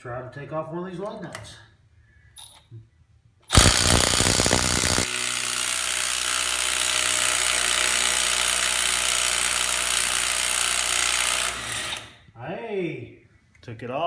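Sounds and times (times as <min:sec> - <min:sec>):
impact wrench hammering: 0:03.5 - 0:11.6.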